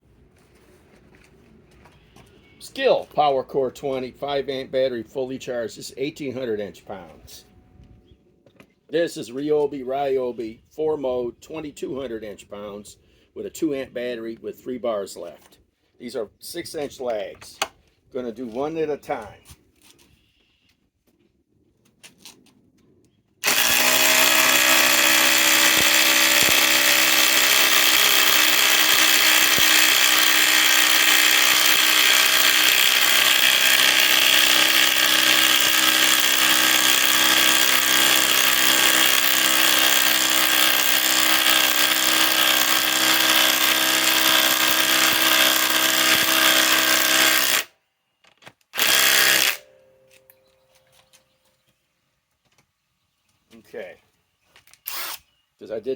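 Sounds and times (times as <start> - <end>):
impact driver hammering: 23.4 - 47.7, 48.8 - 49.7.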